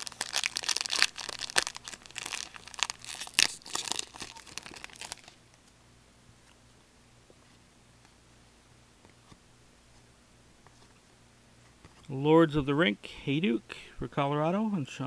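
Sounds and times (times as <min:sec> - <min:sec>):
card wrapper crinkling: 0:00.0 - 0:05.4.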